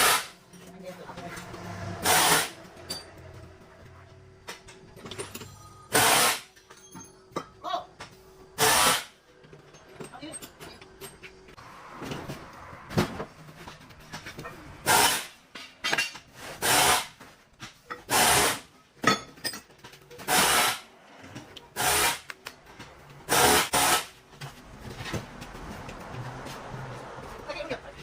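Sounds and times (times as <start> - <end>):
power tool bursts: 2.0 - 2.6, 5.9 - 6.5, 8.6 - 9.2, 16.6 - 17.1, 18.1 - 18.6, 20.3 - 20.8, 21.8 - 22.3, 23.3 - 24.1.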